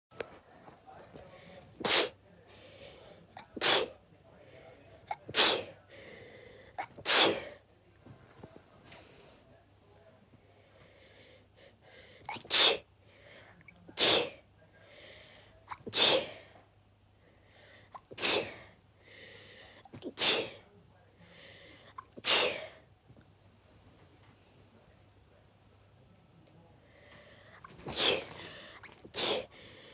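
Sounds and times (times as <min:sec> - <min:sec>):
person sneezing: 0:01.8 - 0:02.2, 0:03.4 - 0:03.9, 0:05.1 - 0:05.8, 0:06.8 - 0:07.6, 0:12.2 - 0:12.9, 0:13.9 - 0:14.4, 0:15.7 - 0:16.5, 0:17.9 - 0:18.7, 0:19.9 - 0:20.6, 0:21.9 - 0:22.8, 0:27.6 - 0:29.7.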